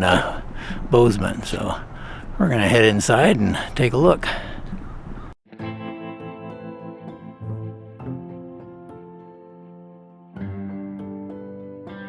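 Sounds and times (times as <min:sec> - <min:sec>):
background music sustained notes: 0:05.6 - 0:12.0.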